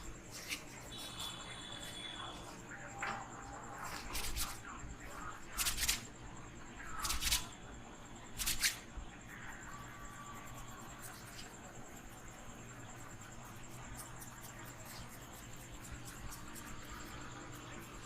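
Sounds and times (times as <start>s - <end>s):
hands rubbing through hair: 0.0s - 2.6s, 3.8s - 4.6s.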